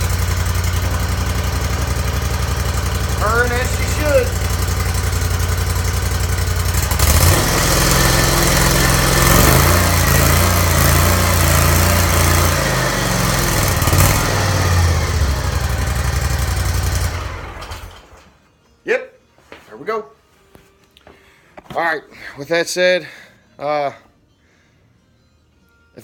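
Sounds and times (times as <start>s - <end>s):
mower engine running: 0.0s - 18.3s.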